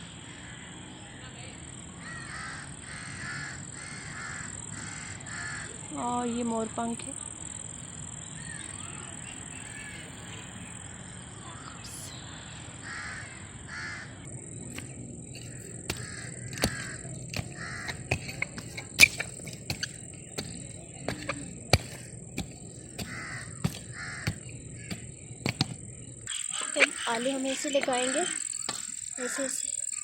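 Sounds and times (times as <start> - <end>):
crows cawing: 0.3 - 0.9, 2.0 - 5.8, 12.8 - 14.3, 15.4 - 29.7.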